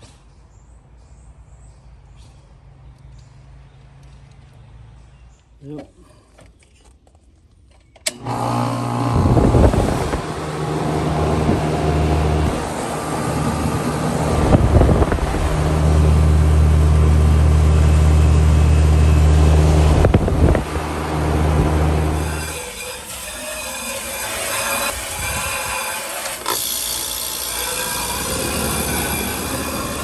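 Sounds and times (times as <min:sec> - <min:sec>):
air conditioner humming: 0:08.1 - 0:22.4.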